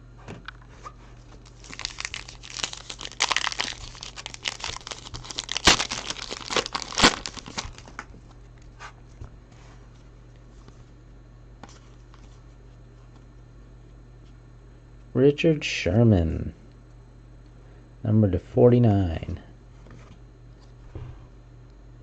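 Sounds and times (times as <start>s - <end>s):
foil wrapper tearing and crinkling: 1.4s - 8.0s
sharp foil crackles: 1.4s - 8.0s.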